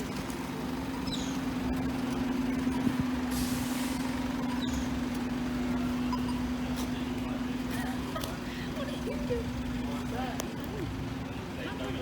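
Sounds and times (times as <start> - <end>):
vehicle engine humming: 0.0 - 12.0
short hiss: 3.3 - 4.1.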